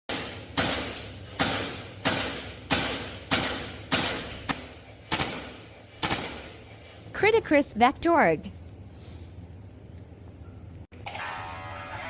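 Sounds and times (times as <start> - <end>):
airsoft gun shots: 0.1 - 6.5.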